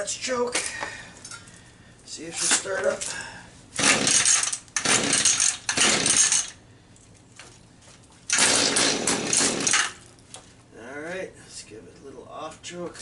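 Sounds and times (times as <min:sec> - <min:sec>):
engine pull-start cranking: 0:03.8 - 0:06.5, 0:08.3 - 0:10.0.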